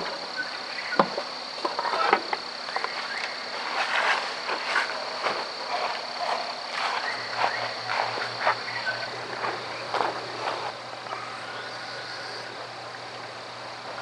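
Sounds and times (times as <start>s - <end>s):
frogs croaking: 0.0s - 14.0s
high-pitched insect drone: 0.0s - 14.0s
faint low pulsing hum: 7.0s - 14.0s.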